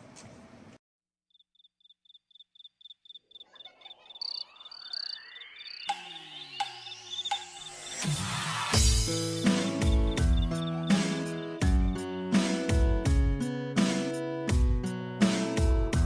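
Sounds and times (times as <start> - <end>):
high electronic ticking: 4.2 - 8.0, 9.0 - 11.6.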